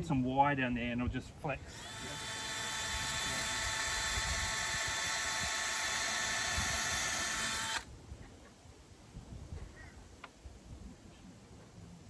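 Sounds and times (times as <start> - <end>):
power drill whining: 1.6 - 7.9.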